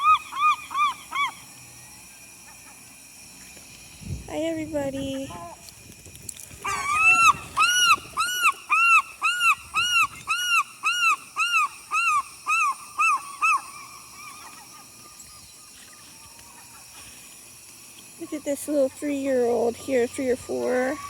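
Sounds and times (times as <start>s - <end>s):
seagull calling: 0.0s - 1.4s, 6.6s - 17.0s, 20.3s - 21.0s.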